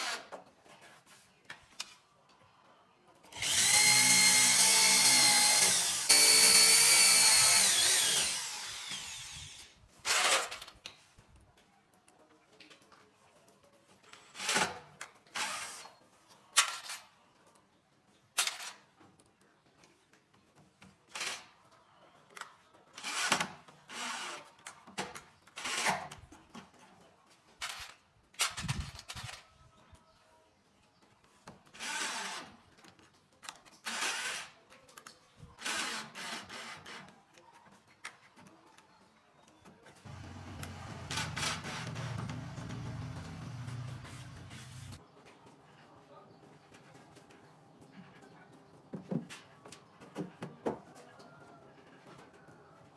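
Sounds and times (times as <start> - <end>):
power tool motor running: 3.4 - 9.7, 40.1 - 45.0.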